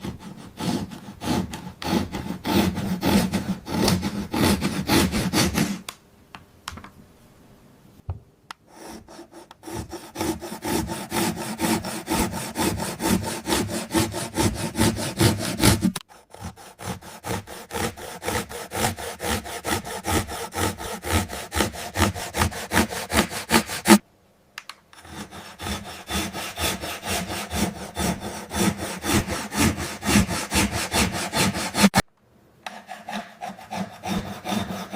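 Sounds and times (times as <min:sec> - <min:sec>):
saw cutting: 0:00.0 - 0:05.9, 0:08.7 - 0:24.0, 0:25.0 - 0:32.0, 0:32.6 - 0:34.9.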